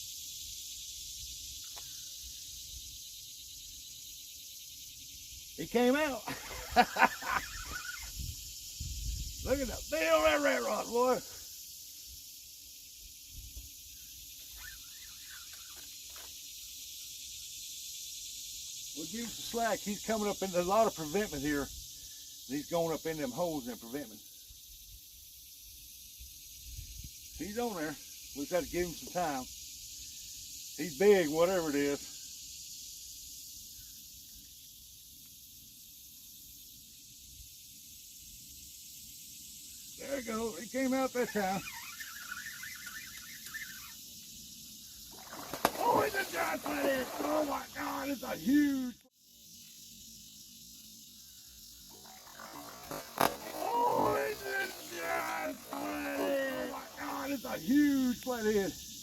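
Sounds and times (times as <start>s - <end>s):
faint high hiss: 0.0s - 59.0s
insect chorus buzzing: 0.0s - 59.0s
faint chirping calls: 7.1s - 10.0s, 12.8s - 19.1s, 40.8s - 59.0s.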